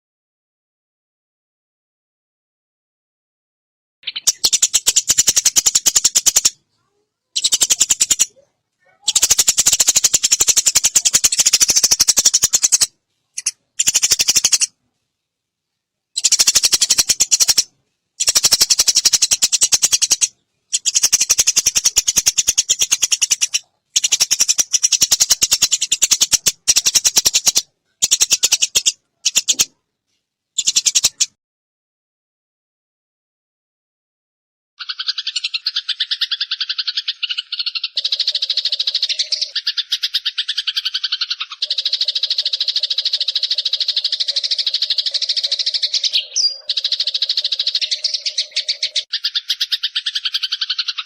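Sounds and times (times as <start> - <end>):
sparrow chattering chirps: 4.0 - 14.7, 16.2 - 29.8, 30.6 - 31.4, 34.8 - 51.0.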